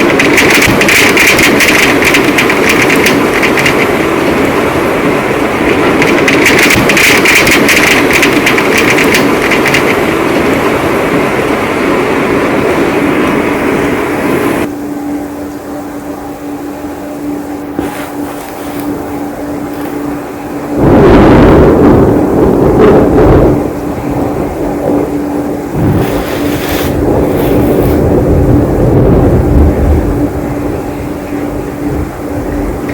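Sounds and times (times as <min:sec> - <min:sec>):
heavy rain pouring: 0:00.0 - 0:14.7, 0:17.8 - 0:32.9
faint steady hum: 0:00.0 - 0:32.9.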